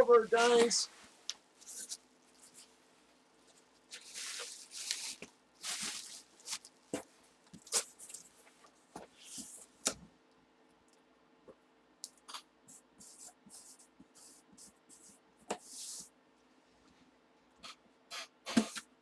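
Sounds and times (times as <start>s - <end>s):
packaging rustling: 1.6s - 8.6s.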